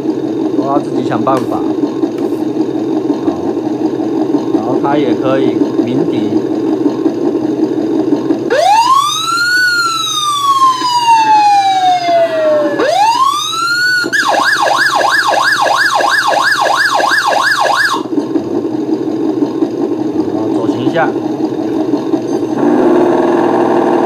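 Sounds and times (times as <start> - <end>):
simulated engine running: 0.0 - 24.0
electronic siren wailing and yelping: 8.5 - 18.1.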